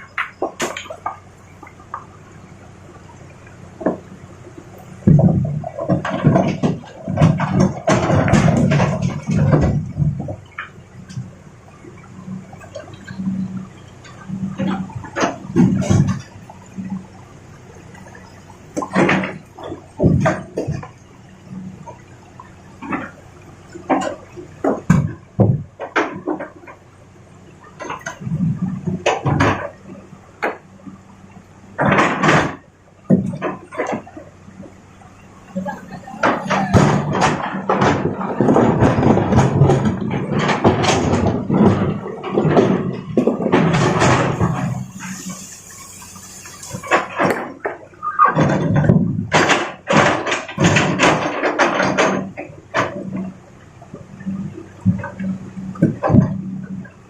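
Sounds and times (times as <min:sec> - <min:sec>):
diesel engine running: 0:00.0 - 0:57.0
rock knocking and clattering: 0:03.8 - 0:26.9, 0:31.8 - 0:56.9
rocks pouring into truck bed: 0:05.0 - 0:10.4, 0:36.2 - 0:47.8.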